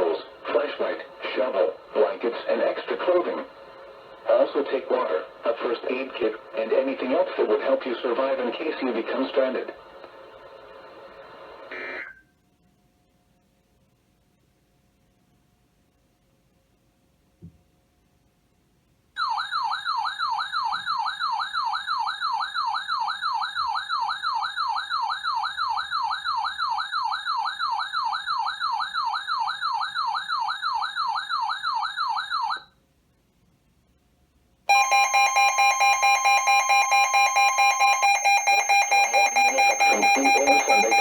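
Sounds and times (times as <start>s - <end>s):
electronic warbling siren: 34.7s - 41.0s
pulsing multi-pitch alarm tone: 34.7s - 41.0s.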